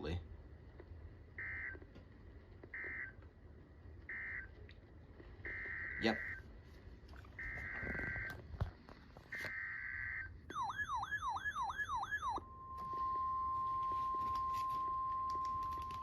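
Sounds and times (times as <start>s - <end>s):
steady warning alarm tone: 1.4s - 1.8s, 2.7s - 3.2s, 4.1s - 4.5s, 5.4s - 6.5s, 7.4s - 8.4s, 9.3s - 16.0s.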